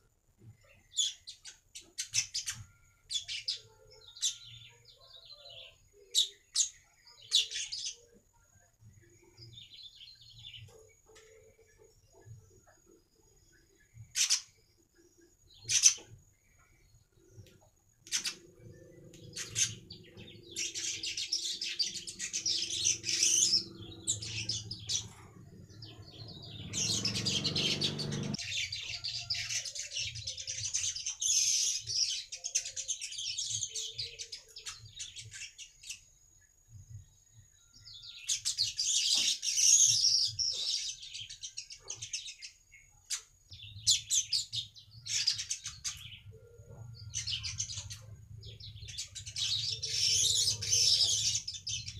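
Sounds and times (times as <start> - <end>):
weaver bird chattering song: 0.6 - 8.2, 9.0 - 36.2, 37.5 - 51.9
low background hum: 43.4 - 51.9.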